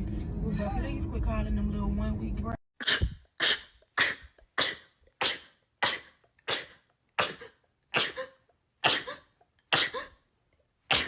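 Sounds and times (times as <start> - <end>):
person sneezing: 2.8 - 10.2.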